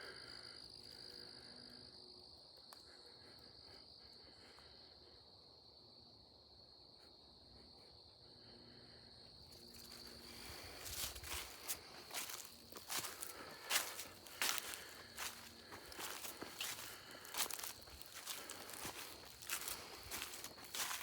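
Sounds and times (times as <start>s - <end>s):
high-pitched insect chorus: 0.0s - 21.0s
footsteps on rocky ground: 9.8s - 21.0s.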